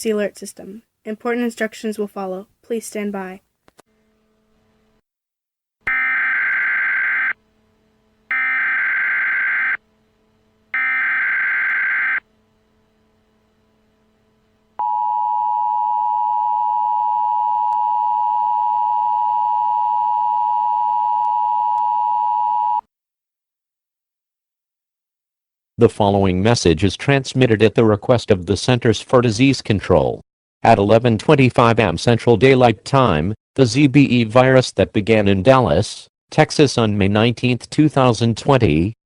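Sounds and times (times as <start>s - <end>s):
steady two-tone attention signal: 5.9s - 7.4s, 8.3s - 9.8s, 10.8s - 12.2s.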